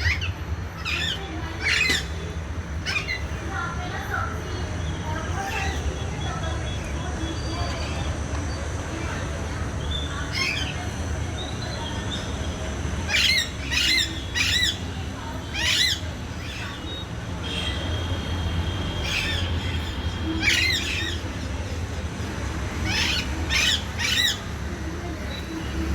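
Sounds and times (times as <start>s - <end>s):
parrot calling: 0.0s - 3.4s, 13.1s - 17.8s, 19.0s - 21.4s, 22.8s - 24.6s.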